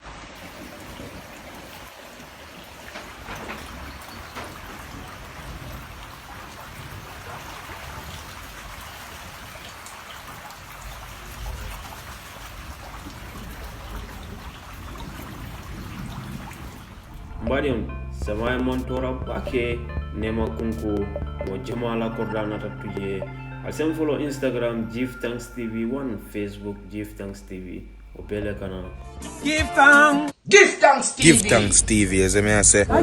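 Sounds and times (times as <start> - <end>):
rain falling: 0.0 - 29.1
low rumble: 16.3 - 29.2.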